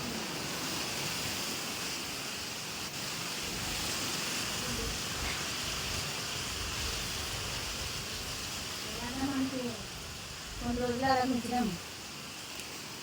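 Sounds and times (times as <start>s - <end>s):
wind buffeting microphone: 3.3s - 12.3s.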